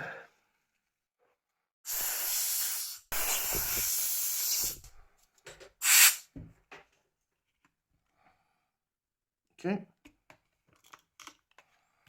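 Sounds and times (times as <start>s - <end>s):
hissing rushes of air: 1.9s - 4.9s, 5.8s - 6.3s.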